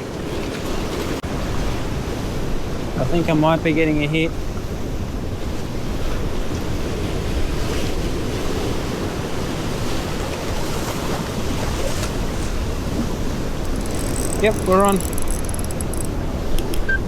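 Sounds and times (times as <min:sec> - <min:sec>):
surf washing over rocks: 0:00.0 - 0:16.8
wind buffeting microphone: 0:04.3 - 0:16.8.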